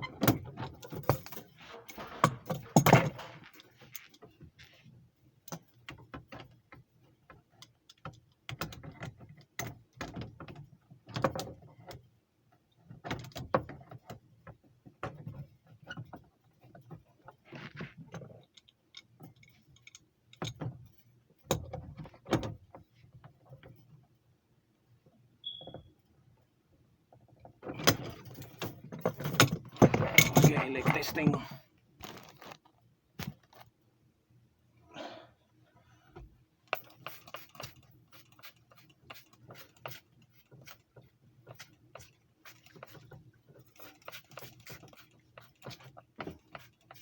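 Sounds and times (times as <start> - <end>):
metal tools clinking and clattering: 28.5 - 31.4.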